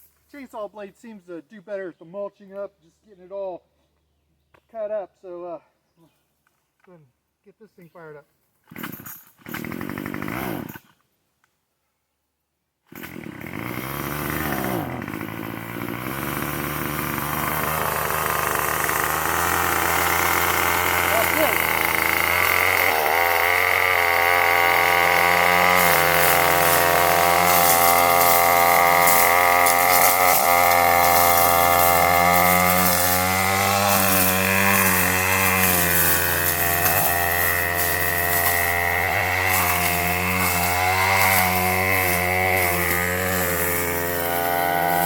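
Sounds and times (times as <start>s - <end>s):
chain rasping into brush: 8.7s - 9.5s
weed eater engine running: 8.7s - 10.9s, 12.9s - 45.0s.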